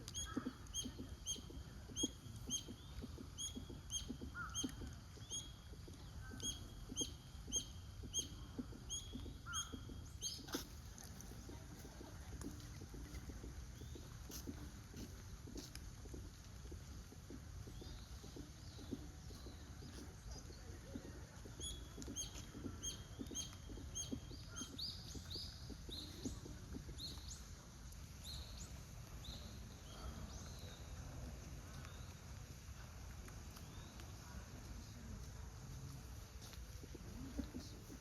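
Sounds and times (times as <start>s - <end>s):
small bird chirping: 0.0s - 15.0s, 16.1s - 27.6s.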